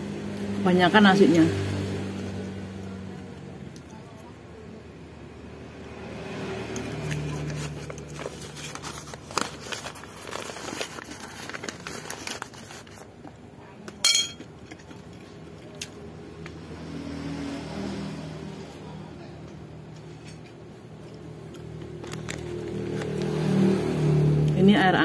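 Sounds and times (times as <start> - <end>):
packaging crinkling and rustling: 7.1 - 13.4, 21.9 - 23.3
sharp ringing clink: 14.0 - 14.4.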